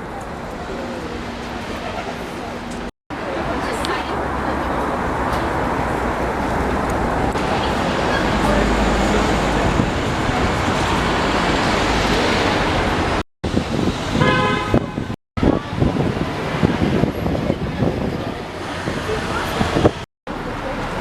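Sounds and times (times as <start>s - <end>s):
street traffic noise: 0.0s - 21.0s
car horn honking: 14.2s - 15.2s.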